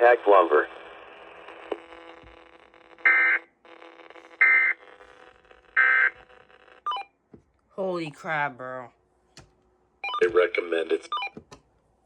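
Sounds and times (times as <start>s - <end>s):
faint radio hiss and hum: 0.0s - 6.9s, 10.2s - 11.3s.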